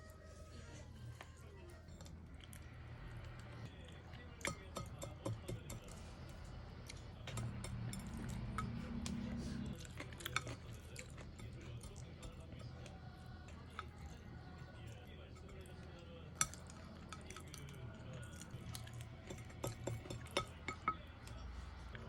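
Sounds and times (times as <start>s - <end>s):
low steady hum: 0.0s - 22.0s
cutlery clinking on dishes: 4.4s - 6.0s, 7.3s - 9.2s, 9.8s - 12.9s, 14.9s - 17.7s, 18.6s - 21.1s.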